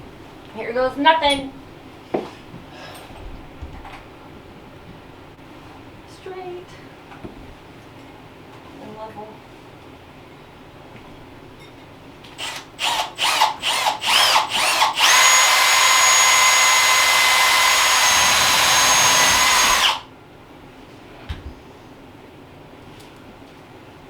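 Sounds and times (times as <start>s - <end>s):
power drill whining: 12.4s - 20.1s.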